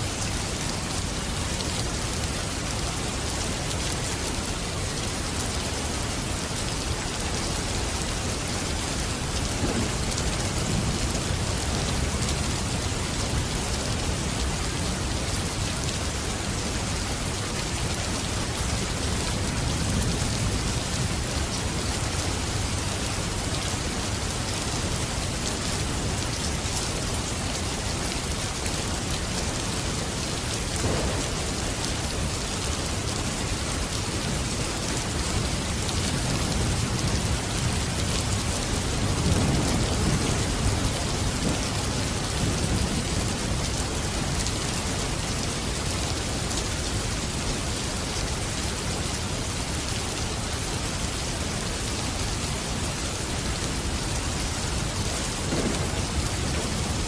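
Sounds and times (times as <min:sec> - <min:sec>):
heavy rain falling: 0:00.0 - 0:57.0
distant thunder rumbling: 0:30.8 - 0:32.4, 0:55.4 - 0:57.0.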